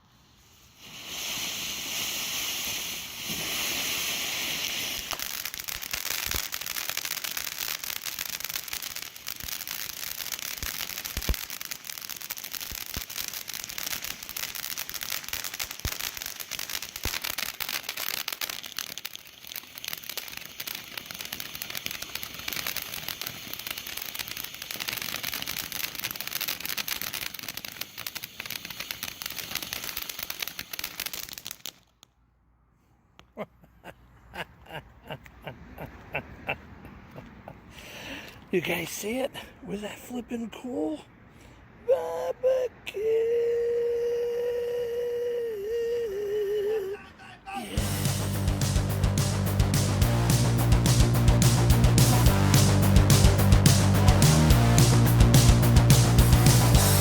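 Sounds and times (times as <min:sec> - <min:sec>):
firework fountain crackling: 0:00.0 - 0:32.2, 0:35.1 - 0:41.0, 0:41.9 - 0:57.0
firework pop: 0:00.8 - 0:05.3, 0:11.1 - 0:11.4.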